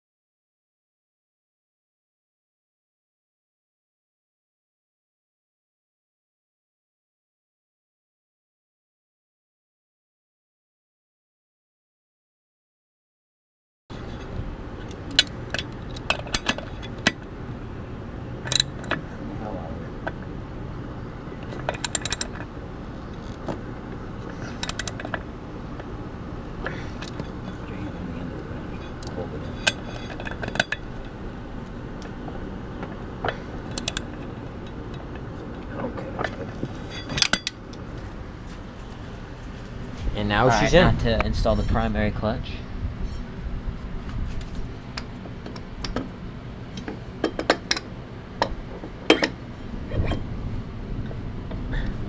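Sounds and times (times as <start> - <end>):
low steady hum: 13.9 - 52.0
metal tools clicking: 18.4 - 19.0, 21.4 - 22.5, 24.5 - 25.2, 33.7 - 34.8, 37.0 - 37.6
metal clutch clinks and taps: 24.6 - 25.2.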